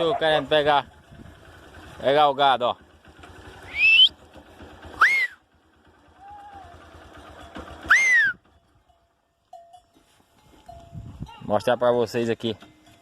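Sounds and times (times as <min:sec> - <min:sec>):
high whistle-like yelps: 0:03.7 - 0:04.2, 0:05.0 - 0:05.4, 0:07.9 - 0:08.4.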